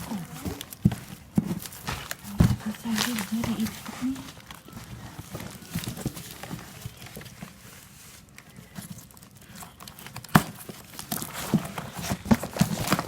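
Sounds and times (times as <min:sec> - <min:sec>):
packaging crinkling: 0:00.0 - 0:13.0.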